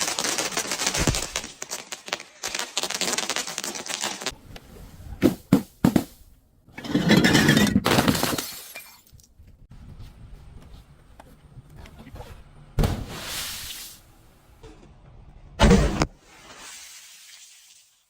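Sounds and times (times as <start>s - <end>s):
glass bottle shattering and crunching: 7.1s - 9.2s.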